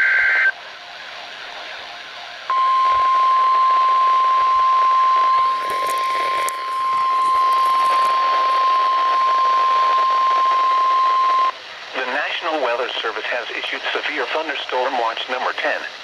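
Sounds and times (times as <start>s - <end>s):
steady high alarm tone: 2.5s - 11.5s
radio static hiss: 3.0s - 16.0s.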